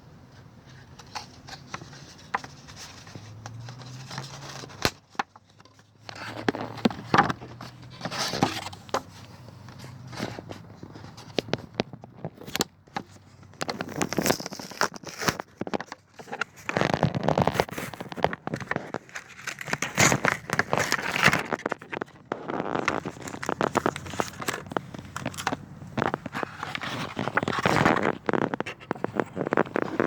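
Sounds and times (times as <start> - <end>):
plastic packaging crinkling and tearing: 10.1 - 30.0.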